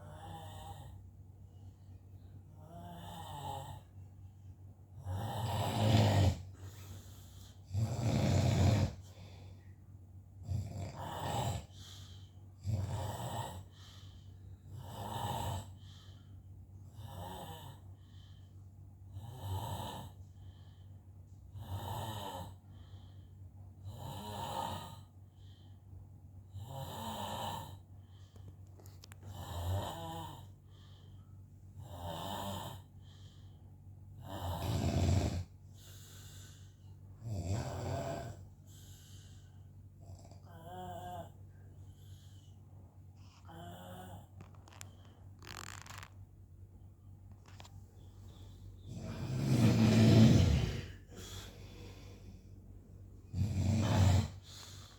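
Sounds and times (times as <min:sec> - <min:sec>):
man snoring: 0:00.0 - 0:00.9, 0:02.6 - 0:03.9, 0:05.0 - 0:06.8, 0:07.6 - 0:09.2, 0:10.4 - 0:11.8, 0:12.6 - 0:13.8, 0:14.7 - 0:15.8, 0:17.0 - 0:17.8, 0:19.2 - 0:20.2, 0:21.6 - 0:22.6, 0:23.9 - 0:25.1, 0:26.6 - 0:27.8, 0:29.2 - 0:30.5, 0:31.8 - 0:32.9, 0:34.2 - 0:36.6, 0:37.2 - 0:39.2, 0:40.1 - 0:41.3, 0:43.4 - 0:44.8, 0:48.3 - 0:52.4, 0:53.3 - 0:54.9.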